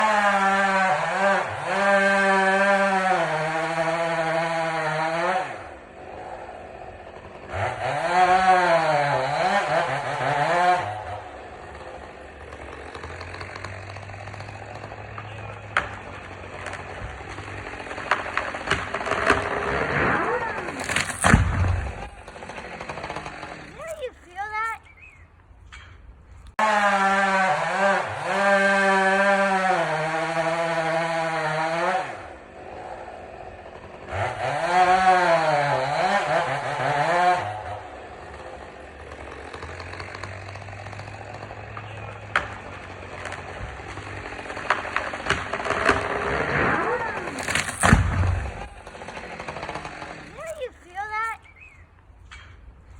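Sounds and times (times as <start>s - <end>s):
chainsaw idling: 0.0s - 24.7s, 26.5s - 52.9s
tree cracking and snapping: 0.0s - 25.0s, 26.3s - 52.5s
tree hitting the ground: 12.6s - 24.8s, 39.3s - 51.1s
branches rushing through air: 16.5s - 26.6s, 44.9s - 52.9s.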